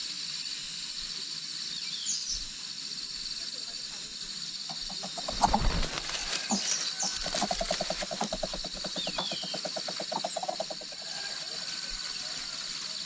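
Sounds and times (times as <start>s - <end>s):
insects buzzing: 0.0s - 13.0s
bird clucking notes: 4.7s - 11.0s.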